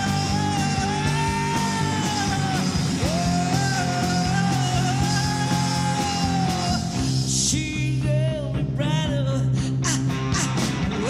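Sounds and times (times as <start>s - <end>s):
rock band playing: 0.0s - 11.0s.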